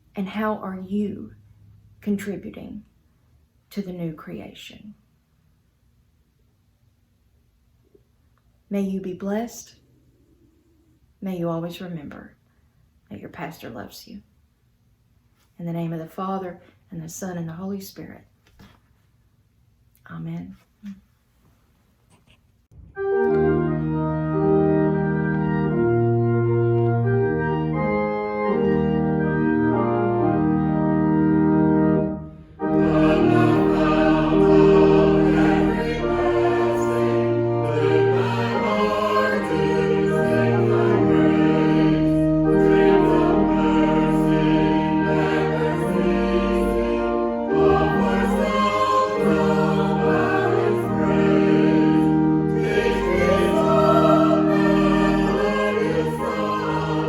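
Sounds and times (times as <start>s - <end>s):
organ playing chords: 22.9s - 57.0s
choir singing: 31.9s - 57.0s.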